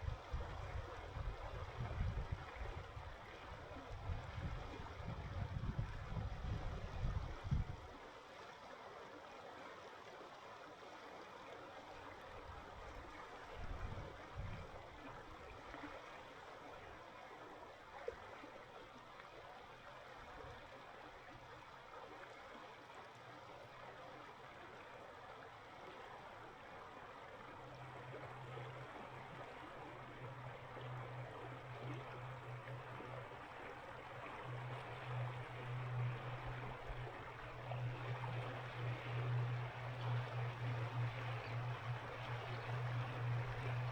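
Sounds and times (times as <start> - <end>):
faint low hum: 25.9 - 43.9.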